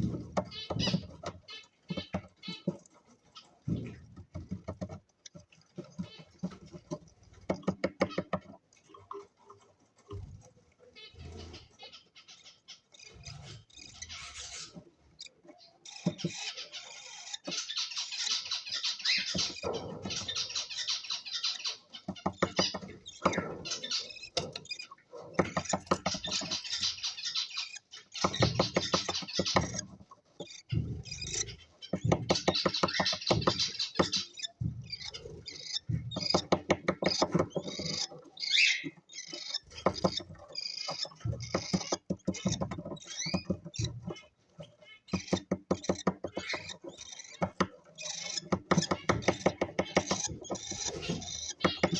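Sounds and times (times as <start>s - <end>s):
cockatiels chirping: 0.5s - 2.7s, 16.2s - 24.9s, 25.5s - 29.8s, 30.5s - 44.2s.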